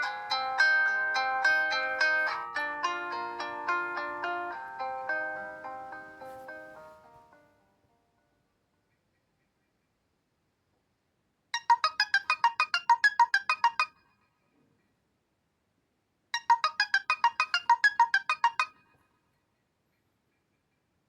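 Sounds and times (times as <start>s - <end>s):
smartphone ringtone: 0.0s - 7.1s, 11.6s - 14.0s, 16.4s - 18.8s.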